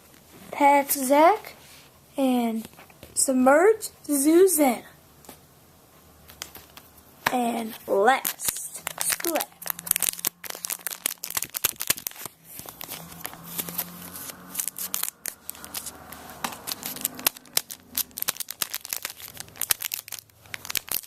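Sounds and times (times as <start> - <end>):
wrapper tearing and crinkling: 8.1 - 21.0.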